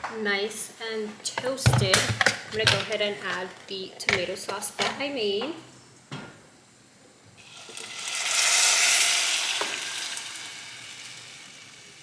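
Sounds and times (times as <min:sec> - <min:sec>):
tomato sauce sizzling in hot oil: 0:07.4 - 0:12.0.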